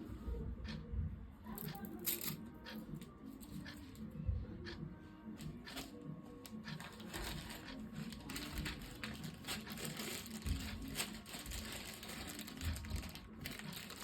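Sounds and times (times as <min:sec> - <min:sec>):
handling noise crinkling and clicks: 0:05.4 - 0:14.0.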